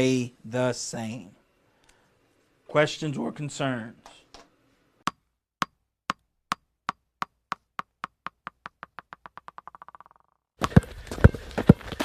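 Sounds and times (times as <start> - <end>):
small hard ball bouncing: 5.1 - 11.8.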